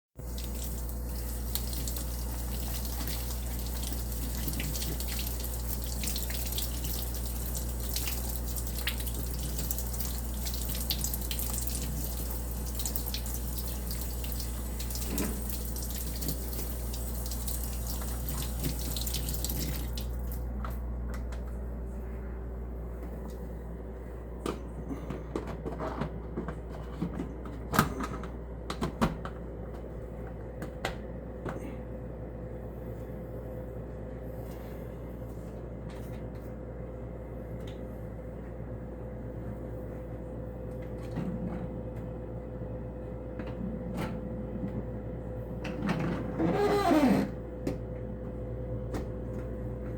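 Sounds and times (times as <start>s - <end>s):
water running from a tap: 0.2s - 20.5s
steady low hum: 0.2s - 46.5s.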